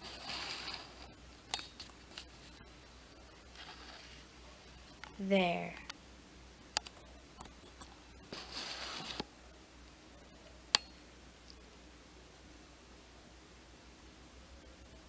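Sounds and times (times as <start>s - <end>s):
scraping rustle: 0.0s - 2.6s, 3.5s - 4.3s, 7.7s - 9.2s.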